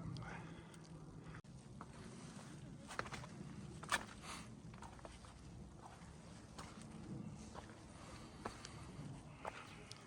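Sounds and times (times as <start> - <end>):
faint footsteps on a trail: 0.6 - 10.0.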